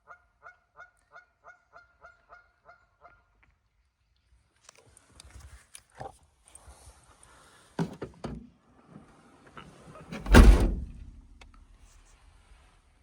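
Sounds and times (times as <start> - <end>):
car door slamming shut: 10.1 - 11.1.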